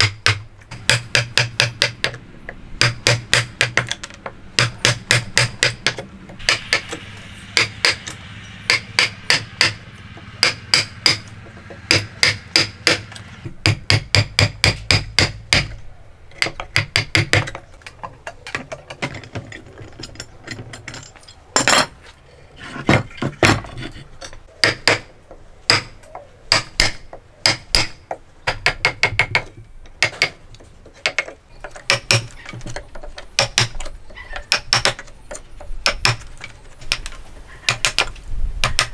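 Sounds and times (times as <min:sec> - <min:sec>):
hammer blows on wood: 0:04.6 - 0:15.8.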